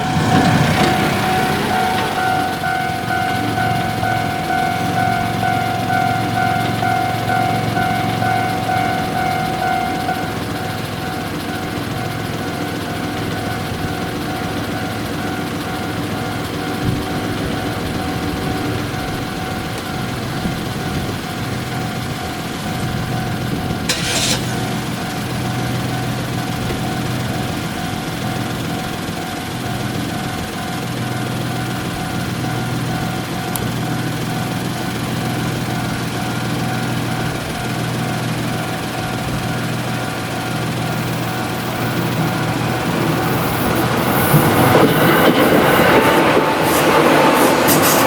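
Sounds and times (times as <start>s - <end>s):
level crossing bell ringing: 0.0s - 12.3s
idling engines hum: 0.0s - 48.0s
short hiss: 23.9s - 24.7s.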